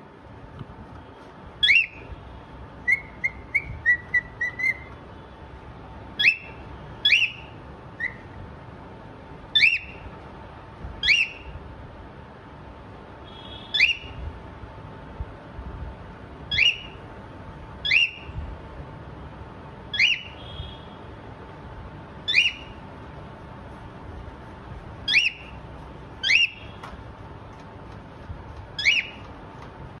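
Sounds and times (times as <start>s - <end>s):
cockatiel whistled calls: 1.6s - 2.1s, 2.8s - 4.9s, 6.2s - 8.3s, 9.5s - 10.0s, 11.0s - 11.5s, 13.7s - 14.2s, 16.5s - 17.0s, 17.8s - 18.3s, 19.9s - 20.4s, 22.3s - 22.8s, 25.1s - 25.6s, 26.2s - 26.7s, 28.8s - 29.3s.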